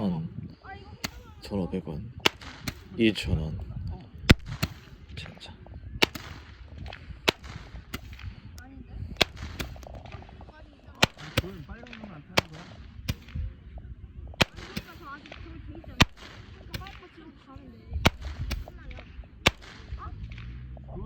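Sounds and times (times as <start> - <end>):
faint voices: 0.0 - 21.0
firecrackers cracking: 2.2 - 3.4, 4.2 - 13.6, 14.3 - 17.3, 18.0 - 20.7.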